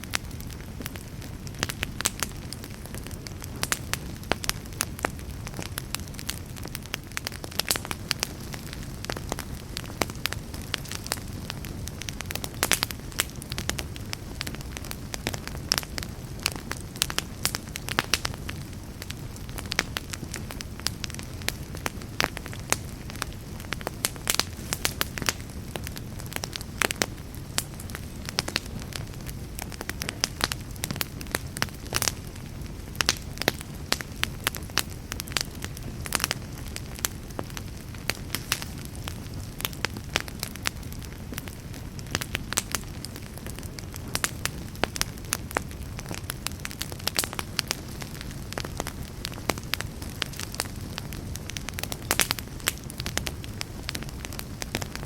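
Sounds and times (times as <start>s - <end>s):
low rumble of flames: 0.0s - 55.0s
wood fire crackling and popping: 0.0s - 55.0s.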